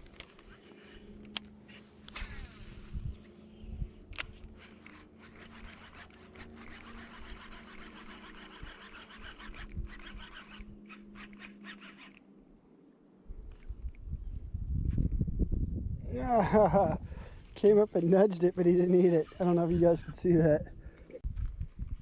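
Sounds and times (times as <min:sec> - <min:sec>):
fishing reel whirring: 0:00.0 - 0:12.3, 0:18.6 - 0:20.6.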